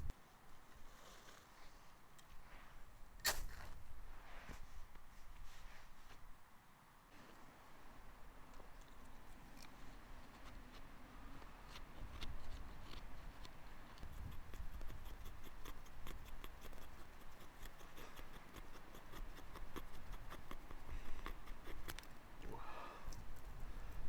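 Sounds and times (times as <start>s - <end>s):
small irregular clicks: 11.7s - 22.2s.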